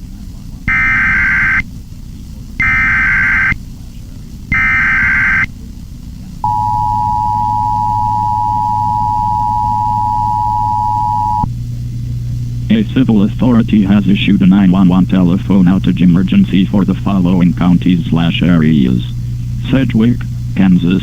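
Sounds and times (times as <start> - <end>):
warbling digital data tones: 0.7 - 1.6, 2.6 - 3.6, 4.5 - 5.5, 6.4 - 11.5
piercing attention tone: 6.4 - 11.5.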